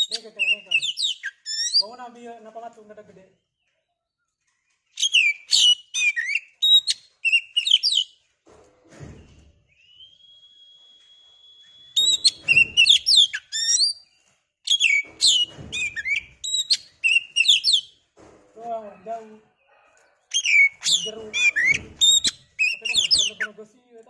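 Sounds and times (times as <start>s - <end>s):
bird singing whistles and chirps: 0.0s - 2.0s, 4.9s - 8.2s, 9.2s - 18.0s, 20.3s - 23.5s.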